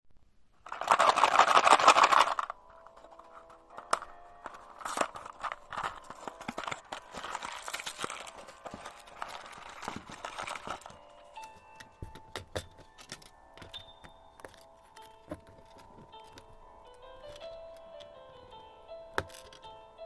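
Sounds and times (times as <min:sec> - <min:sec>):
faint steady background tones: 0:01.5 - 0:20.0
toy bricks clicking and rattling: 0:11.5 - 0:19.7.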